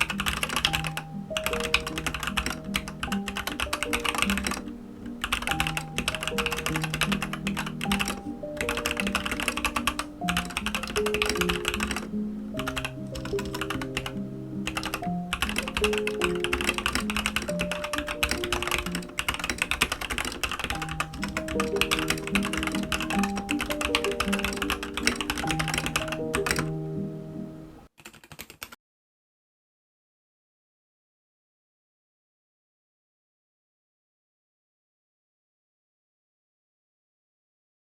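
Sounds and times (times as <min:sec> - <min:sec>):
mechanical keyboard typing: 0:00.0 - 0:26.7, 0:28.0 - 0:28.8
background music: 0:00.0 - 0:27.9.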